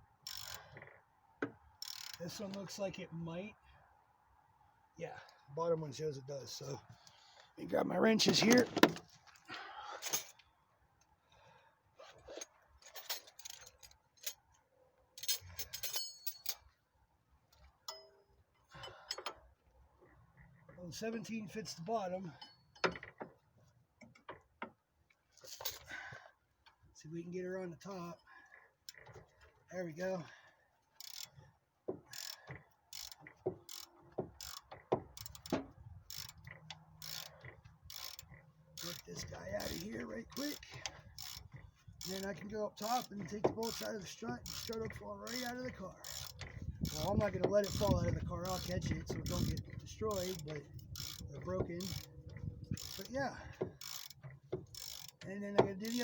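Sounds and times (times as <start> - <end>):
metal wrenches clinking: 10.0 - 10.4, 12.0 - 14.5, 15.2 - 16.8, 17.8 - 19.5, 21.6 - 23.4, 25.4 - 25.9, 32.0 - 56.0
sharp metallic clinks: 15.2 - 16.6, 17.9 - 19.3
short metallic rings: 15.2 - 16.7, 17.8 - 19.4, 21.7 - 23.2.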